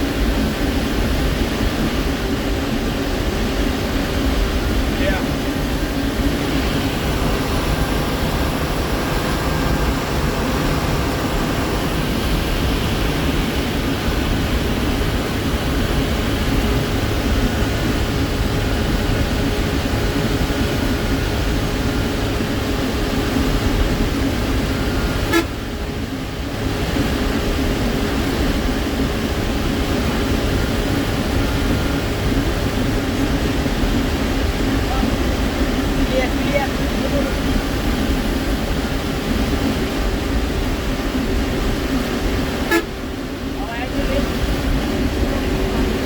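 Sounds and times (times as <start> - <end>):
diesel truck engine under load: 0.0 - 46.0
turbocharger whistle: 25.2 - 25.6, 42.7 - 42.9.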